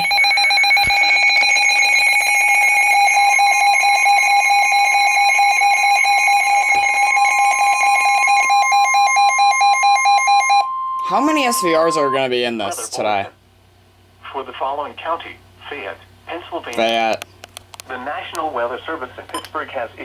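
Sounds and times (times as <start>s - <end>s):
harsh alarm tone with flutter: 0.0s - 13.0s.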